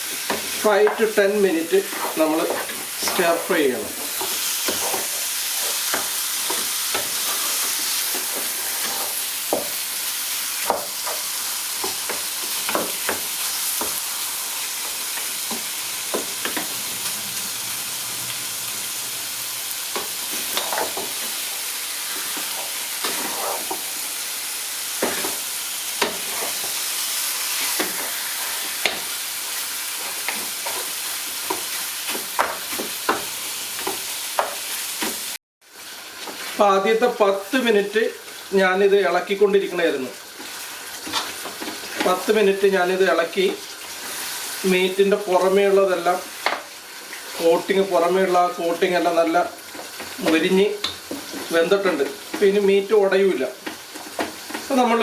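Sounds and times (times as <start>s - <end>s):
meat sizzling in a pan: 0.0s - 55.0s
utensil scraping and knocking pan: 1.8s - 9.7s.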